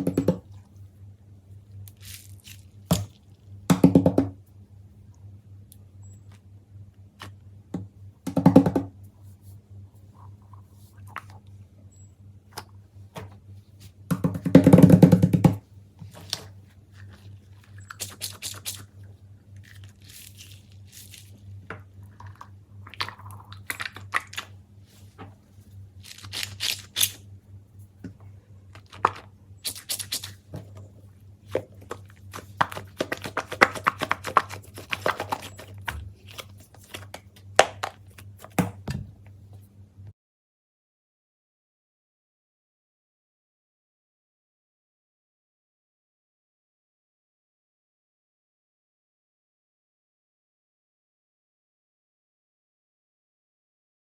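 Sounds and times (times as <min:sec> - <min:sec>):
low electrical hum: 0:00.0 - 0:40.1.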